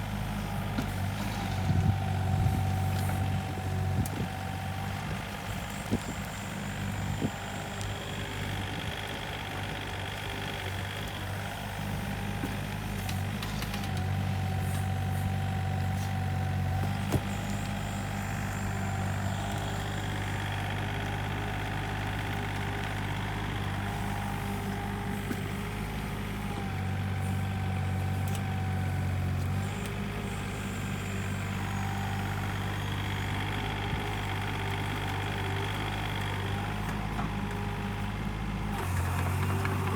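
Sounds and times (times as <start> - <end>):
mini excavator diesel engine: 0.0 - 39.9.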